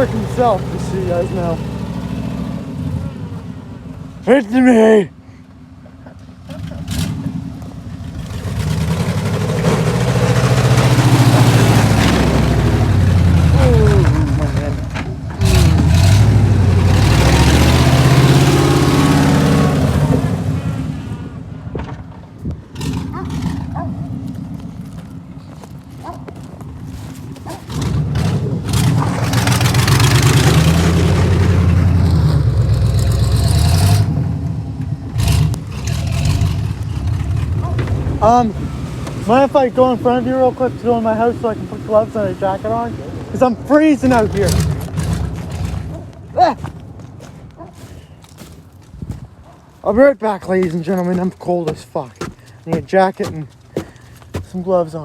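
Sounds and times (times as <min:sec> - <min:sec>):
vehicle engine running: 0:00.0 - 0:55.0
rushing scraping noise: 0:43.4 - 0:46.2.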